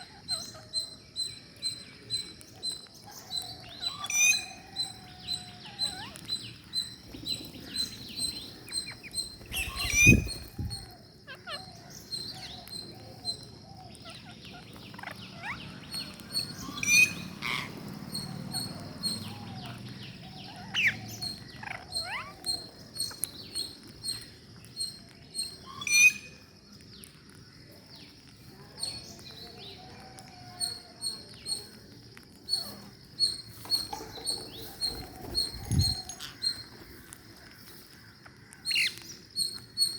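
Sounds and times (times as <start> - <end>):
parrots chirping: 0.0 - 26.5, 28.1 - 39.9.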